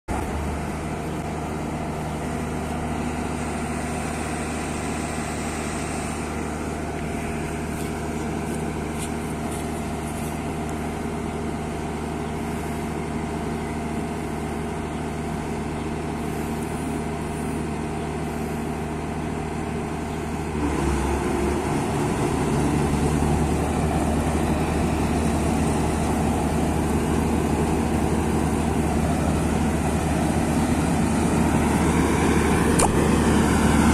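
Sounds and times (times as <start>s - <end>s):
combine harvester running: 0.1s - 33.9s.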